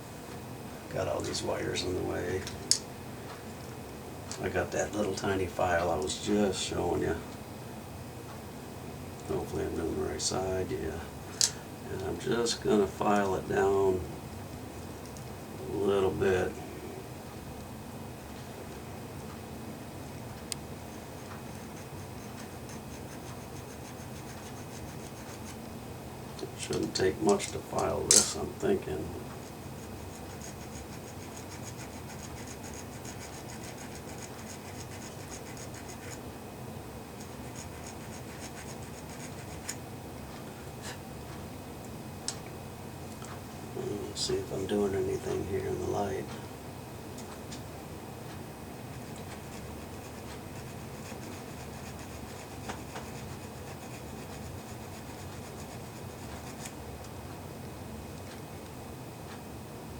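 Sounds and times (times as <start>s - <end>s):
small file rasping: 21.0s - 25.6s, 29.4s - 36.2s.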